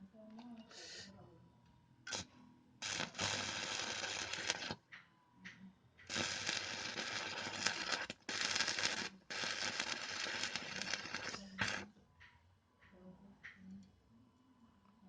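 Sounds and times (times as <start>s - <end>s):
welding arc crackling and hissing: 2.1s - 4.8s, 6.1s - 11.9s.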